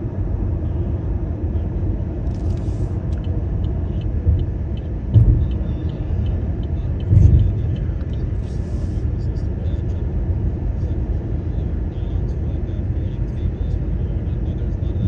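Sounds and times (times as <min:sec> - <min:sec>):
car road and engine rumble: 0:00.0 - 0:15.0
car bumps: 0:05.1 - 0:05.8.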